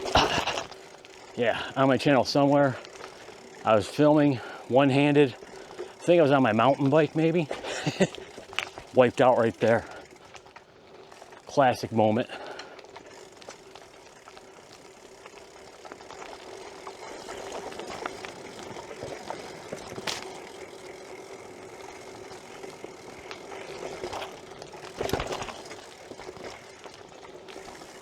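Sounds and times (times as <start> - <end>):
bike tyre and drivetrain noise: 0.0 - 28.0
bike knocking over bumps: 12.3 - 28.0.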